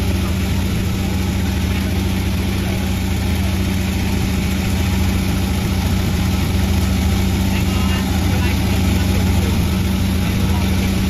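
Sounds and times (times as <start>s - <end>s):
sawmill engine humming: 0.0s - 11.0s.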